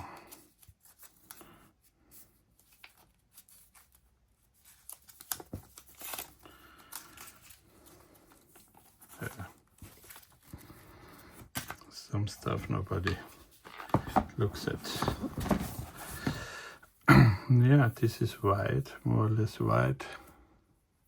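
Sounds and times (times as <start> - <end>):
paper rustling and crinkling: 0.0 - 16.5.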